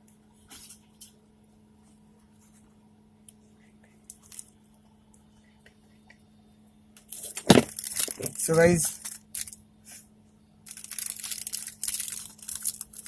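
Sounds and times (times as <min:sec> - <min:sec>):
steady low hum: 0:00.0 - 0:13.0
small parts clicking and rustling: 0:04.0 - 0:04.6, 0:07.0 - 0:09.6, 0:10.7 - 0:13.0.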